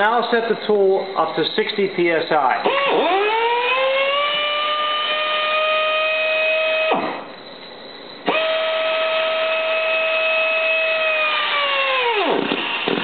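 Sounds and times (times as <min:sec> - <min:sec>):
pneumatic air motor whining: 0:02.6 - 0:07.3, 0:08.2 - 0:13.0.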